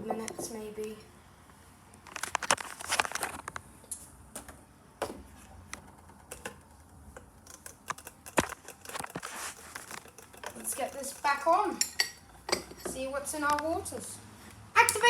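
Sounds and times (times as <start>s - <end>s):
small objects clicking and rustling: 5.8s - 11.3s.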